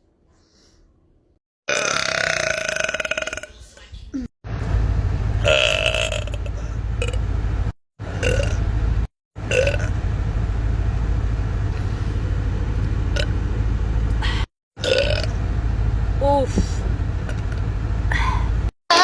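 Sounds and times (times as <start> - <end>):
person burping: 1.7 - 3.5, 14.8 - 15.3
low rumble: 4.5 - 18.7.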